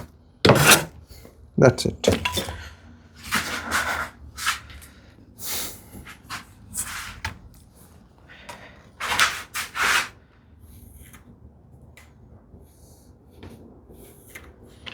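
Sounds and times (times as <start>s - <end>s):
short scrapes of tools: 0.5s - 0.9s.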